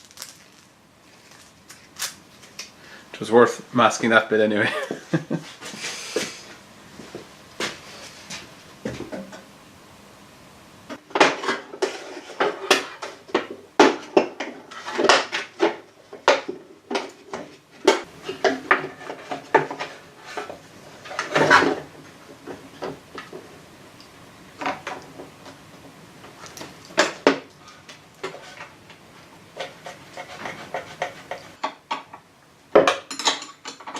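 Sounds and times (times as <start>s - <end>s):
metal parts and tools clinking: 0.0s - 2.2s, 33.0s - 33.9s.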